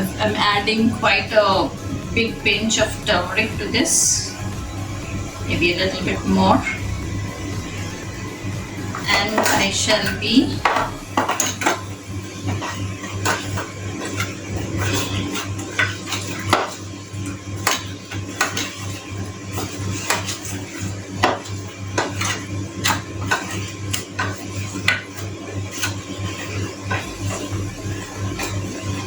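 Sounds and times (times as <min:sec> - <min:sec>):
low hum: 0:00.0 - 0:16.4, 0:26.9 - 0:29.0.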